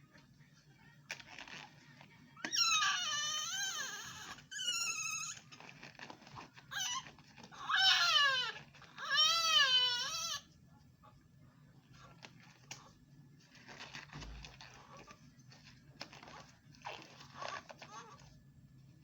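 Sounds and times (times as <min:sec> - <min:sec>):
newborn baby crying: 0:02.7 - 0:04.5, 0:06.7 - 0:10.4.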